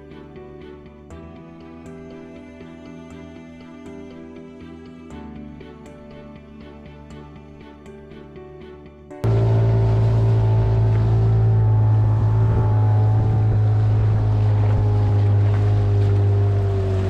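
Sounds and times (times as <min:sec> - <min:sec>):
motorboat engine droning: 0:09.2 - 0:17.0.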